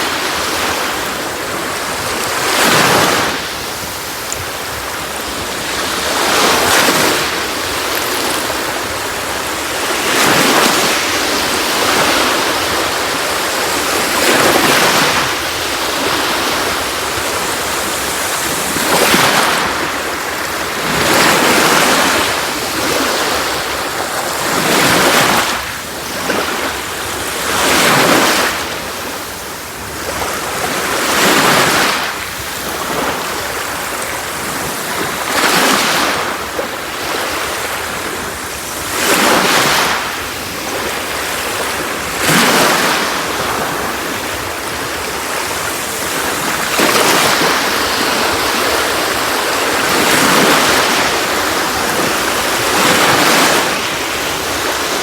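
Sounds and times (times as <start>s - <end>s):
sea waves breaking on beach: 0.0s - 55.0s.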